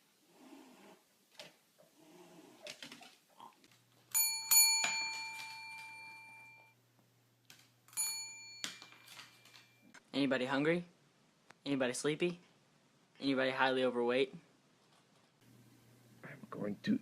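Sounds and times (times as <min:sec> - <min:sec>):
doorbell chime: 0:04.2 - 0:06.8, 0:07.9 - 0:09.8.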